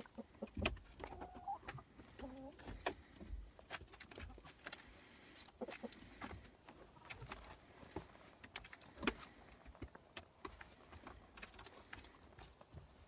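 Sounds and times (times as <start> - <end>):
chicken clucking: 0.0 - 13.0.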